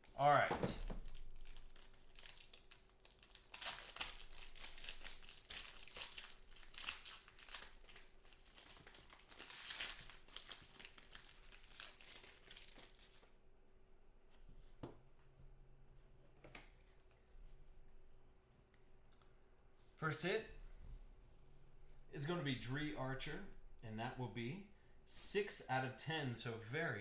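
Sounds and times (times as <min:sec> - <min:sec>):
foil wrapper tearing and crinkling: 0:01.0 - 0:13.2.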